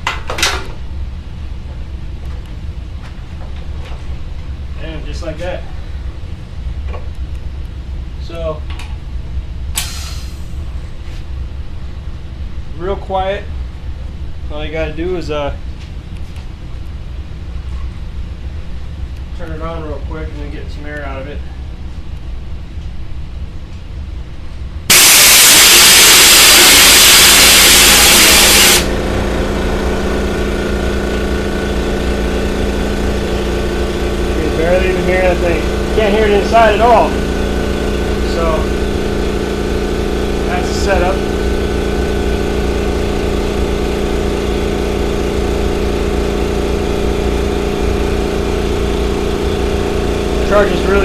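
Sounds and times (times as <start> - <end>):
compressed air hissing: 9.8 - 10.7, 24.9 - 28.9
air compressor motor humming: 9.8 - 10.8, 24.9 - 51.0.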